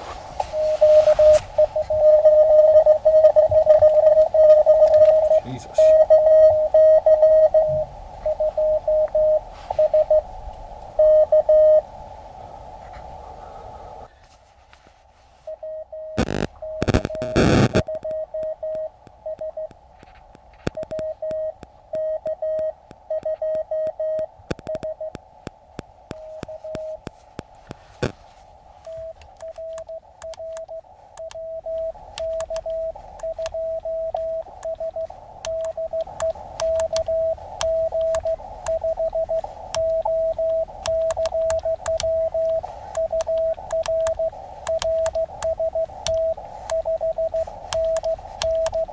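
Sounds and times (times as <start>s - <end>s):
receiver hiss: 0.0s - 14.1s, 16.2s - 48.9s
morse code tone: 0.4s - 10.2s, 15.5s - 19.7s, 20.8s - 25.2s, 28.9s - 48.9s
scattered clicks: 16.2s - 28.2s, 28.8s - 48.9s.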